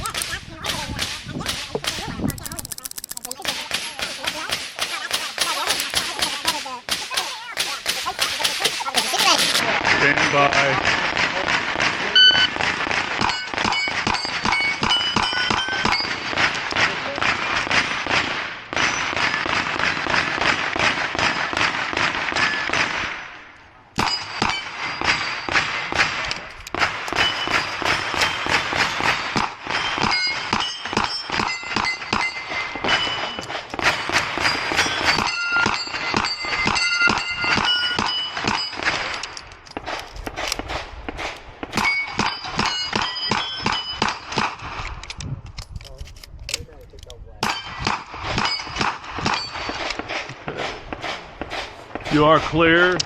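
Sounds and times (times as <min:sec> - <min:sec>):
steel targets ringing: 0:13.2 - 0:16.3, 0:24.0 - 0:26.0, 0:27.1 - 0:39.3, 0:41.8 - 0:44.3, 0:48.4 - 0:49.9.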